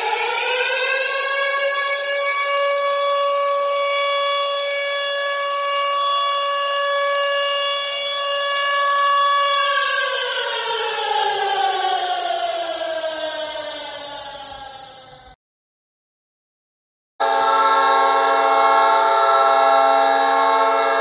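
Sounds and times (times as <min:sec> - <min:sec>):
hockey goal horn blast: 0:17.2 - 0:21.0.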